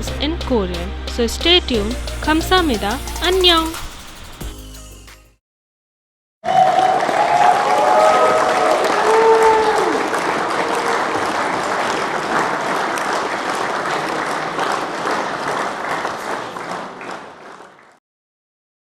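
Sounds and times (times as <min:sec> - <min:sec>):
crowd applause: 0:06.5 - 0:18.0.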